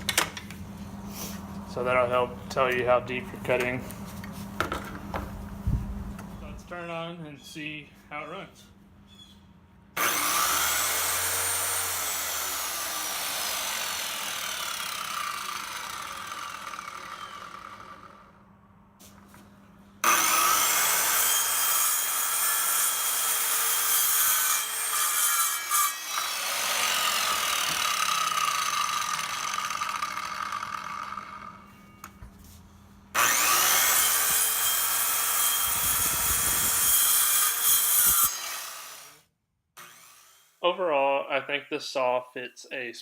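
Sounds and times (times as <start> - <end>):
saw cutting wood: 10.0 - 18.4, 20.0 - 31.9, 33.1 - 40.6
circular saw whirring: 10.0 - 18.5, 20.0 - 32.0, 33.1 - 39.2, 39.8 - 40.6.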